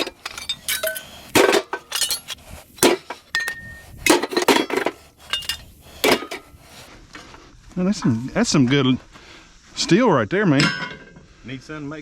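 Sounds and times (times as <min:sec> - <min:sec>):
scrap metal clanking onto pile: 0:00.0 - 0:06.4.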